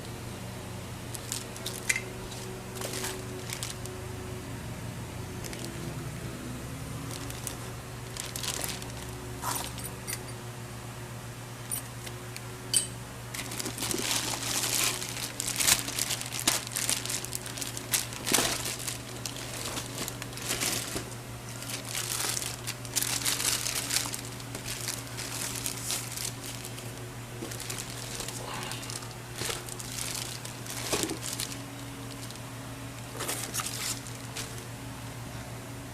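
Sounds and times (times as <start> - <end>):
steady low hum: 0.0 - 35.9
packaging crinkling: 1.1 - 4.0, 5.4 - 5.8, 7.0 - 10.0, 13.3 - 32.5, 33.1 - 34.6.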